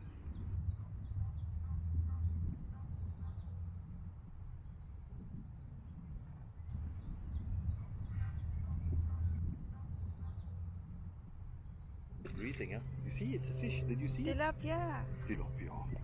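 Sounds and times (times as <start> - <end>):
songbirds chirping and trilling: 0.0 - 16.0
low rumble: 6.5 - 10.9, 12.3 - 16.0.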